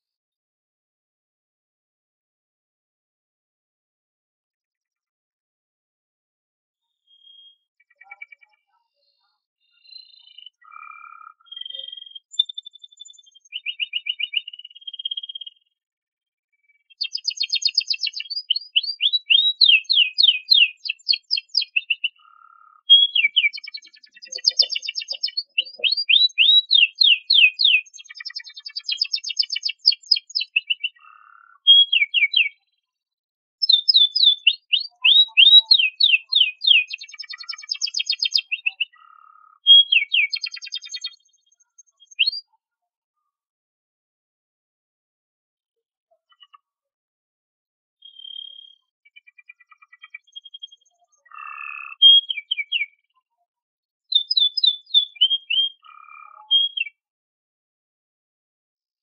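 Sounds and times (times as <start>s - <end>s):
canary singing: 9.8s - 15.2s, 16.9s - 32.6s, 33.6s - 41.2s, 41.8s - 42.5s, 48.0s - 53.0s, 54.1s - 57.0s.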